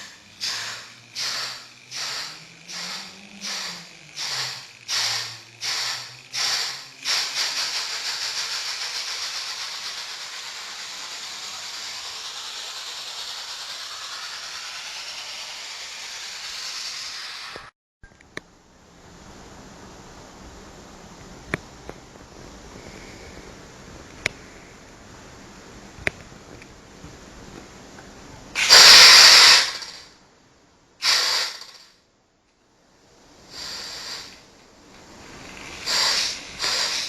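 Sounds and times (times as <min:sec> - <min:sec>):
steam locomotive chuffs: 0:00.0 - 0:17.5, 0:35.3 - 0:37.0
continuous steam hiss: 0:00.0 - 0:17.7, 0:18.5 - 0:32.0, 0:32.7 - 0:37.0.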